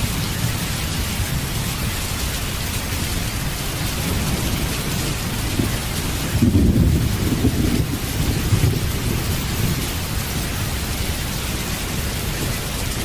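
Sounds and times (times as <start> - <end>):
low rumble of thunder: 0.0 - 13.0
steady rain falling: 0.0 - 13.0.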